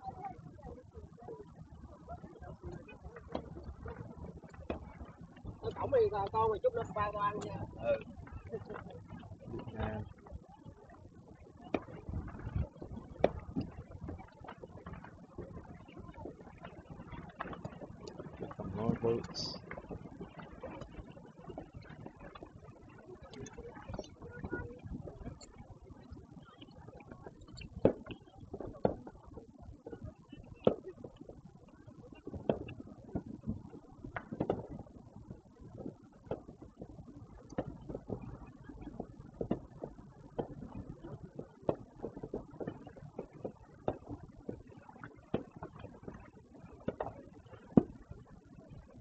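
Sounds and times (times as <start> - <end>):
distant fireworks popping and banging: 0.0 - 49.0
fireworks bangs: 27.2 - 31.4, 32.1 - 34.9.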